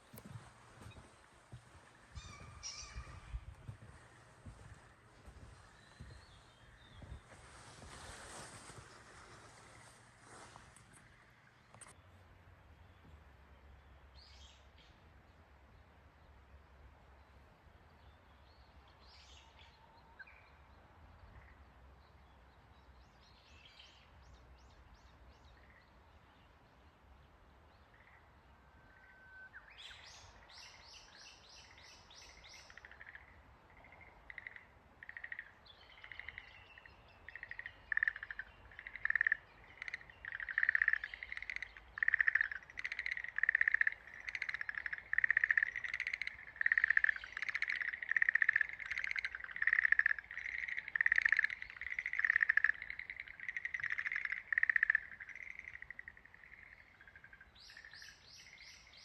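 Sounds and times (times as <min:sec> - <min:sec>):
tree frogs calling: 0:00.0 - 0:07.4, 0:27.9 - 0:59.0.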